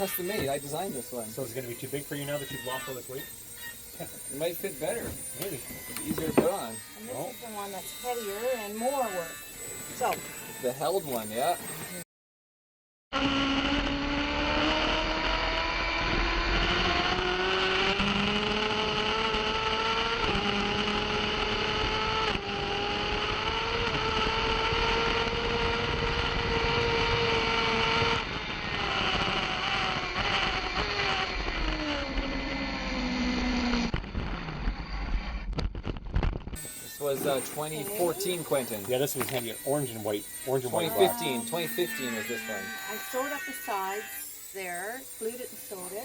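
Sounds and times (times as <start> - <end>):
racing motorcycle engine high revs: 13.2 - 34.2.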